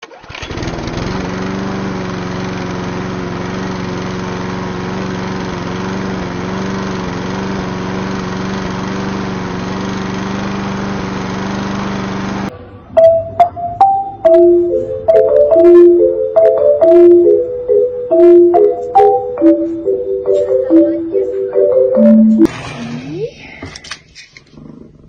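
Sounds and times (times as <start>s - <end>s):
lawn mower engine running: 0.0s - 12.5s.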